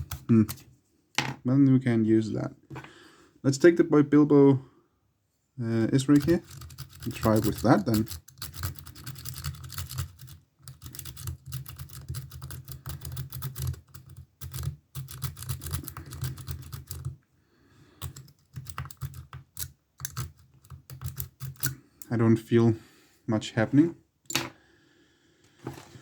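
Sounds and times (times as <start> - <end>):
lock pick raking metallic clicks: 18.0 - 22.1.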